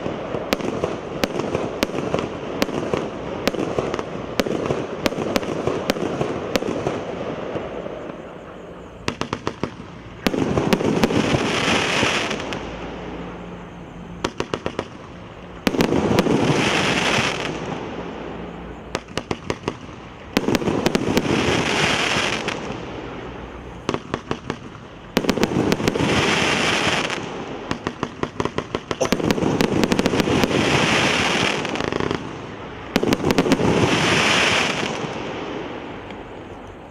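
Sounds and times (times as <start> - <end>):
firework shells bursting with crackle: 0.0 - 36.9
firework launch pops: 9.0 - 12.7.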